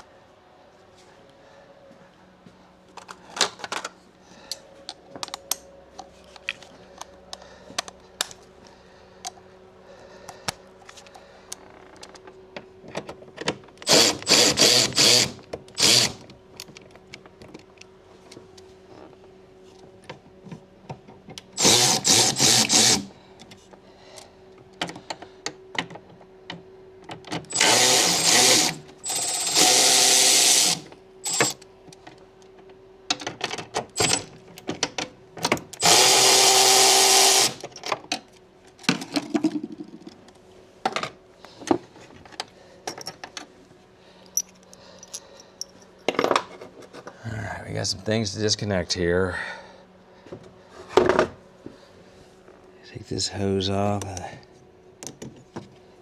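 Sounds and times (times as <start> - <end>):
cordless power tool spinning bolts: 13.8 - 16.3, 21.6 - 23.1, 27.5 - 31.6, 34.0 - 34.3, 35.8 - 37.6
tools clicking and clinking: 44.3 - 46.5.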